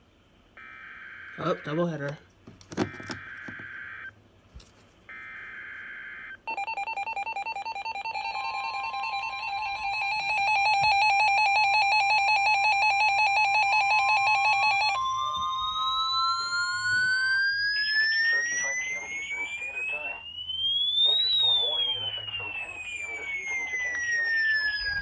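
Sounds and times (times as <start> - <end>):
header data tones: 1.3 - 4.1, 6.5 - 25.0
tone rising in pitch: 6.5 - 12.6, 13.8 - 25.0
steady high tone: 6.5 - 25.0.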